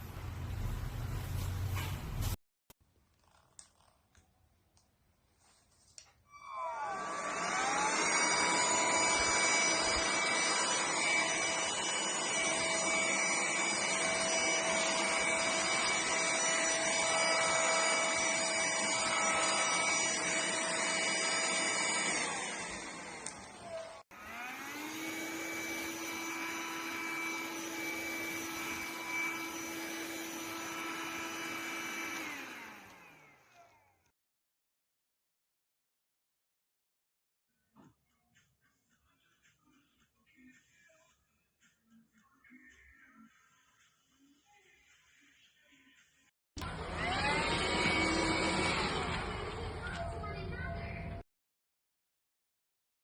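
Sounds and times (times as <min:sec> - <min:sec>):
stick vacuum cleaner motor whining: 0:06.4 - 0:33.9, 0:46.6 - 0:50.1.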